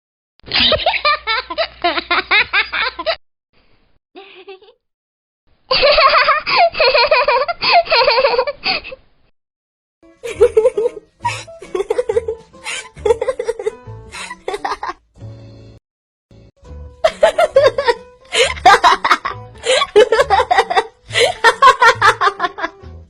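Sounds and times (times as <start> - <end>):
little girl laughing: 0.6 - 3.2, 4.2 - 4.8, 5.7 - 9.0, 10.3 - 15.0, 17.1 - 22.7.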